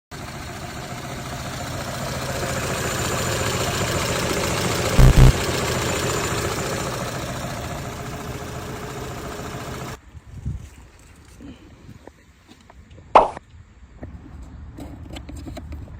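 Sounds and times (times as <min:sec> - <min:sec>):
car engine running: 0:00.2 - 0:10.0
loud low thump: 0:05.0 - 0:05.4.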